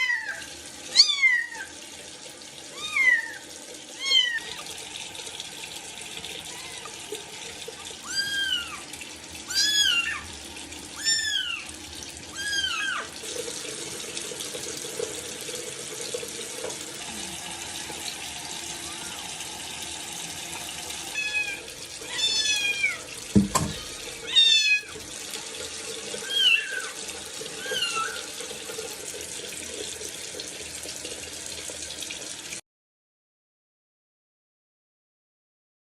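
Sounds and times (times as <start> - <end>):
running water tap: 0.0 - 32.6
kittens meowing: 4.0 - 4.6, 6.5 - 7.0, 8.0 - 8.8, 9.5 - 10.3, 11.0 - 11.7, 12.3 - 13.1, 21.1 - 23.0, 23.7 - 24.9, 26.2 - 26.9
knock: 23.3 - 23.8.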